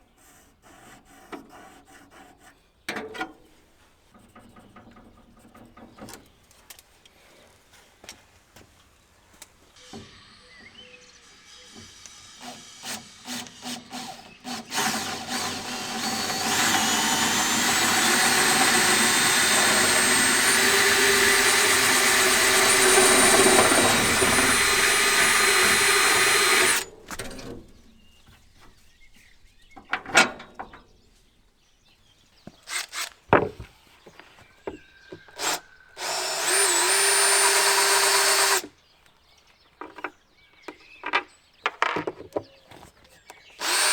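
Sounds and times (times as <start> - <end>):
power drill whining: 9.8 - 27.2, 32.6 - 33.6, 35.1 - 38.7, 43.6 - 43.9
handling clicks and knocks: 39.8 - 43.5.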